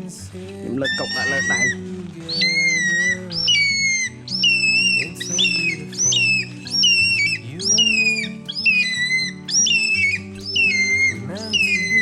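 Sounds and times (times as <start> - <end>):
background music low notes: 0.0 - 12.0
bird shrill calls: 0.7 - 12.0.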